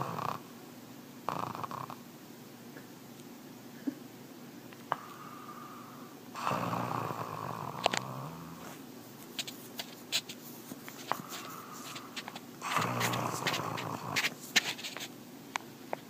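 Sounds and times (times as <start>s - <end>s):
dog snoring: 0.0s - 0.4s, 1.3s - 2.0s, 4.9s - 8.8s, 11.0s - 14.4s.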